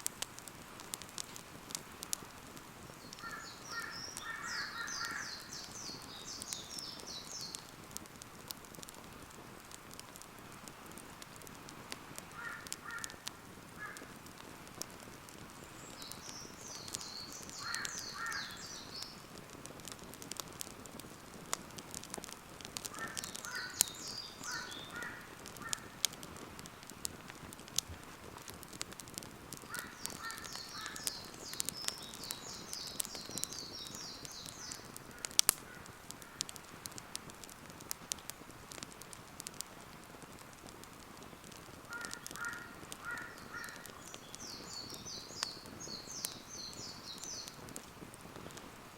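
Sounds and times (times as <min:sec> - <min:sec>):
campfire crackling and popping: 0:00.0 - 0:48.9
birds calling: 0:03.0 - 0:07.7, 0:12.3 - 0:14.2, 0:15.6 - 0:19.2, 0:22.0 - 0:26.9, 0:29.6 - 0:36.6, 0:41.5 - 0:47.7
bird chattering song: 0:03.1 - 0:07.6, 0:15.8 - 0:19.2, 0:23.0 - 0:25.9, 0:29.7 - 0:35.9, 0:41.9 - 0:47.6.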